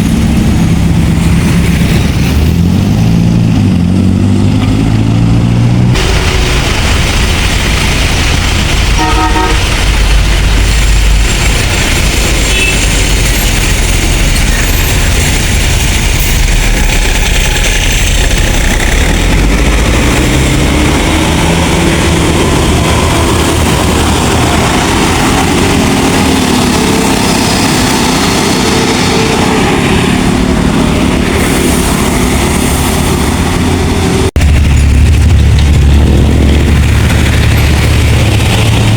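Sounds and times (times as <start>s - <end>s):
bus diesel engines passing: 0.0s - 38.9s
short horn toot: 9.0s - 9.7s.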